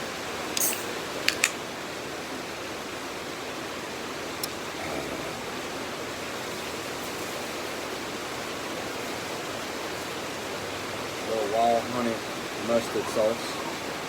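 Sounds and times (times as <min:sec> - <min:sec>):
stream rushing over rocks: 0:00.0 - 0:14.0
sharp click: 0:00.6 - 0:01.6.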